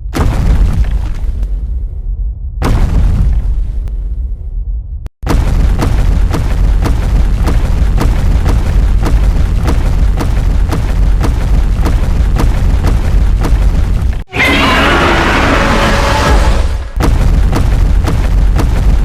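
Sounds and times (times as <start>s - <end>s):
deep rumbling monster sound: 0.0s - 19.0s.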